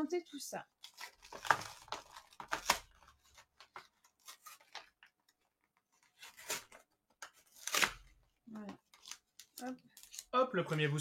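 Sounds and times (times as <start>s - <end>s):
packaging crinkling and tearing: 0.8s - 5.3s, 6.0s - 8.2s.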